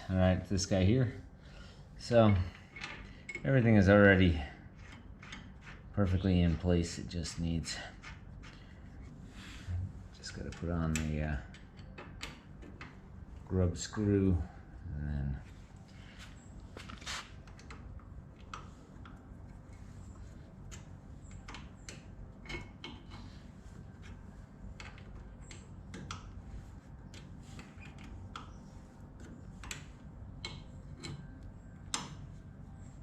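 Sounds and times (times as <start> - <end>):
low steady hum: 0.0 - 33.0
allen key metal clicks: 20.7 - 23.3, 29.6 - 32.2.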